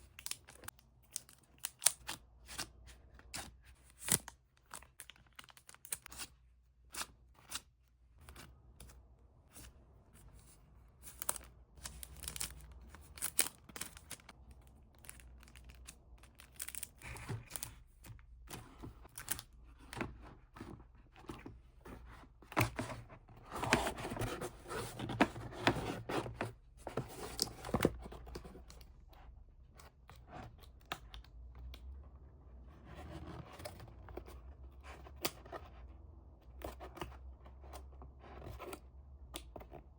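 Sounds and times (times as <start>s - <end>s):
wrapping tearing and crinkling: 11.0s - 17.8s.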